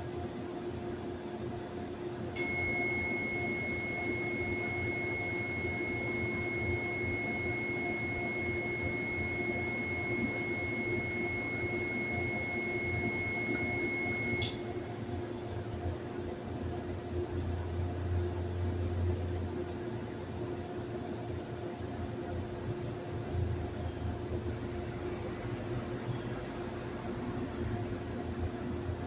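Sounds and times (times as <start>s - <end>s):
high-pitched electronic tone: 2.4s - 15.0s.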